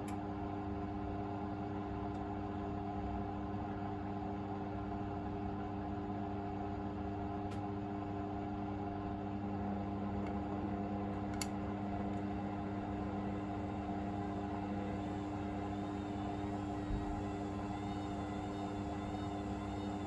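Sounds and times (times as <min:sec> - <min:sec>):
washing machine spinning: 0:08.6 - 0:20.0.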